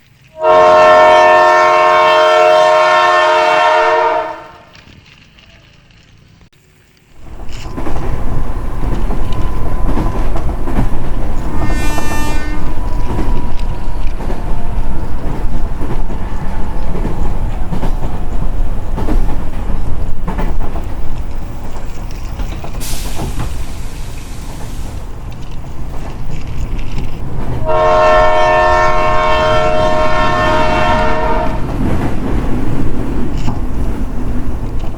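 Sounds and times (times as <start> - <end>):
train rattling rumble: 0.0 - 34.9
train horn: 0.3 - 4.8, 11.5 - 13.9, 27.6 - 31.7
burst of hiss: 22.8 - 25.1.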